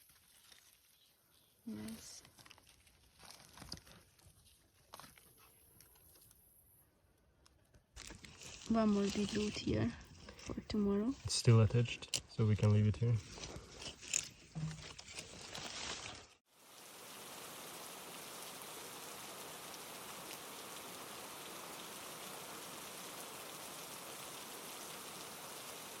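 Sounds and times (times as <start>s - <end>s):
plants and soil rustling: 0.0s - 6.5s, 7.9s - 26.0s
rain falling: 16.5s - 26.0s.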